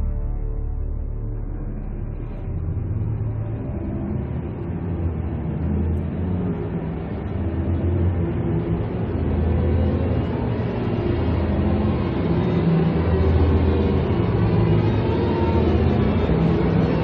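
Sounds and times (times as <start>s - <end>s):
film score with low held notes: 0.0s - 17.0s.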